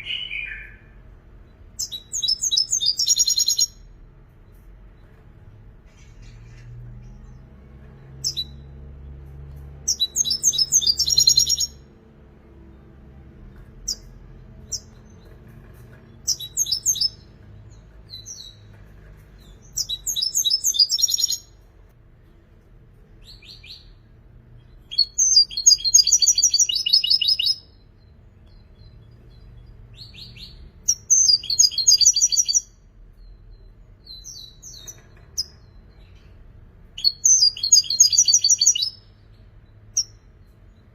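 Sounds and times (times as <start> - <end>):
bird twittering song: 0.0 - 11.9, 13.5 - 21.6, 23.2 - 40.9.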